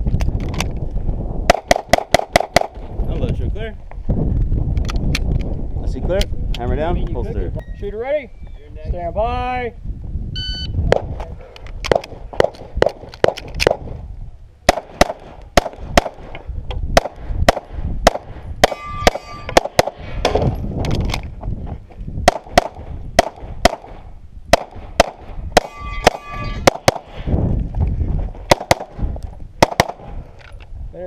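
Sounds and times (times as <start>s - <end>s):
pistol shots: 1.5s - 2.8s, 14.7s - 16.3s, 17.0s - 20.4s, 22.2s - 27.2s, 28.5s - 29.0s, 29.6s - 30.1s
steel targets ringing: 18.6s - 19.6s, 25.6s - 26.7s.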